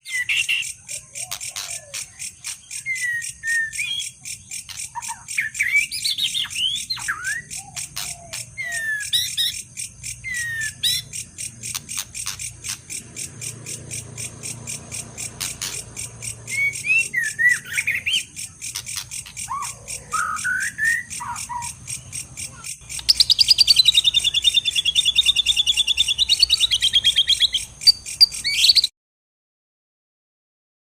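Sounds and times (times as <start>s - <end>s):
birds chirping: 0.0s - 28.9s
insects buzzing: 0.1s - 28.9s
loud even trill: 9.5s - 28.9s.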